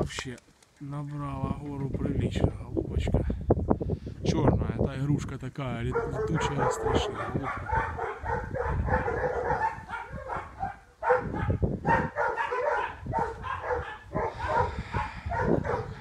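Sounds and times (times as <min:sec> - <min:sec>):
gusty wind on microphone: 0:01.3 - 0:16.0
dog barking and yelping: 0:05.9 - 0:16.0.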